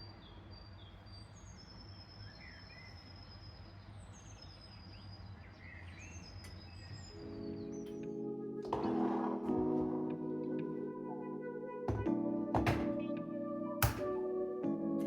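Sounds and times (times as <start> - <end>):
songbirds singing: 0.0 - 15.0
soft music: 7.0 - 15.0.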